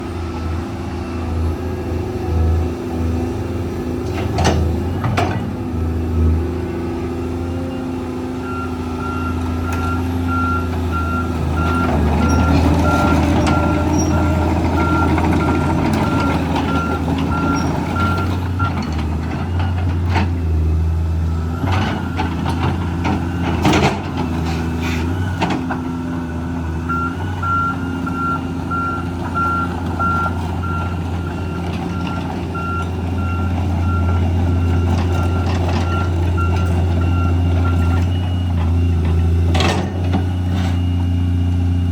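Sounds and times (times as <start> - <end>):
excavator diesel engine running: 0.0 - 41.9
motion alarm beeping: 26.9 - 38.3.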